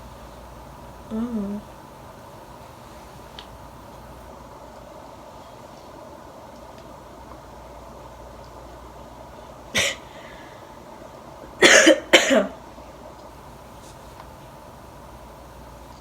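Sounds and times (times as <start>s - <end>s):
person coughing: 9.8s - 10.1s, 11.6s - 12.6s.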